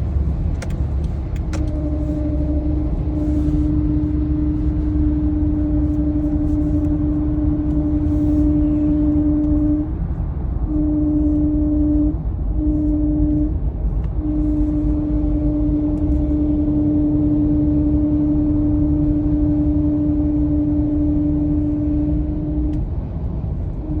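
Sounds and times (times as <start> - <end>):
car mid-pitched hum: 0.0 - 24.0
low rumble: 0.0 - 24.0.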